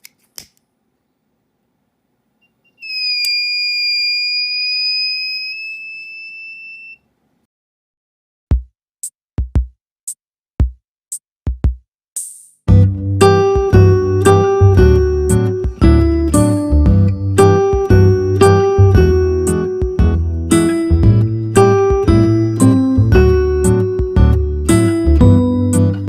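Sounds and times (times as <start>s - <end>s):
fire alarm buzzer beep: 2.4s - 7.0s
drum machine beat: 8.5s - 12.9s, 13.5s - 14.0s, 17.6s - 19.2s, 19.8s - 20.3s, 21.8s - 22.3s, 23.1s - 25.5s.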